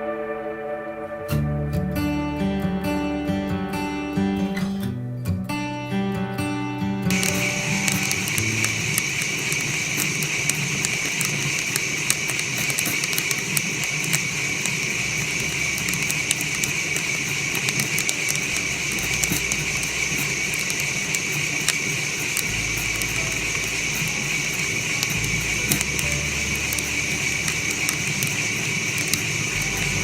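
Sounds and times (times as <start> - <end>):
coffee beans popping: 7.1 - 30.0
roaster hissing: 7.1 - 30.0.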